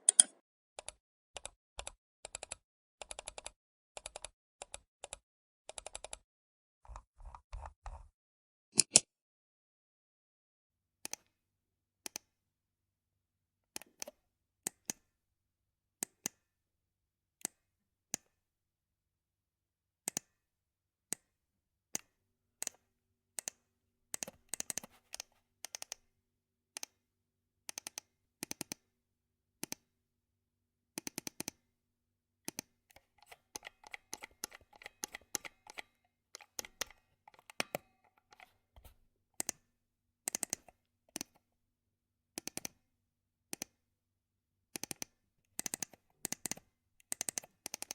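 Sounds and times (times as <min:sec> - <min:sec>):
computer mouse clicking: 0:00.0 - 0:06.2, 0:23.4 - 0:26.0, 0:26.8 - 0:27.0, 0:27.7 - 0:28.8, 0:29.6 - 0:29.9, 0:31.0 - 0:31.6, 0:32.5 - 0:39.7, 0:40.3 - 0:41.5, 0:42.4 - 0:42.8, 0:43.5 - 0:43.8, 0:44.7 - 0:47.9.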